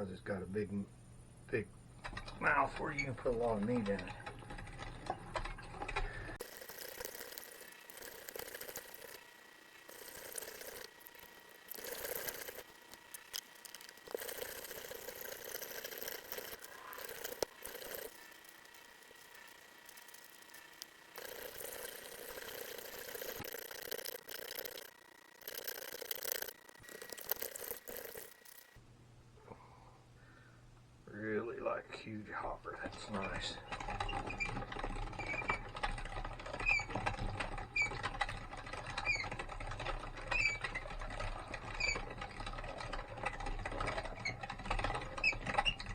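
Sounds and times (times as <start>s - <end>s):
meat grinder grinding: 3.8s - 28.8s, 33.7s - 45.9s
faint steady whine: 5.4s - 33.6s.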